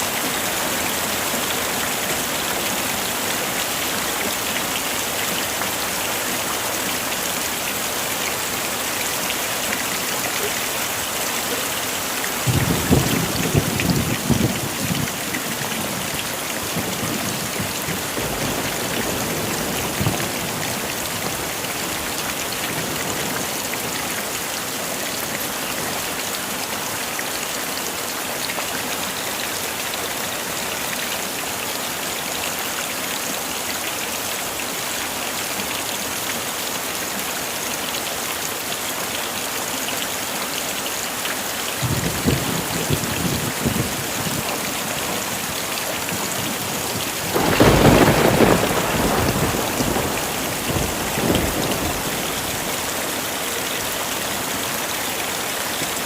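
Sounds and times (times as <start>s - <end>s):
heavy rain falling: 0.0s - 56.0s
thunder rumbling: 12.4s - 15.2s, 46.2s - 52.8s.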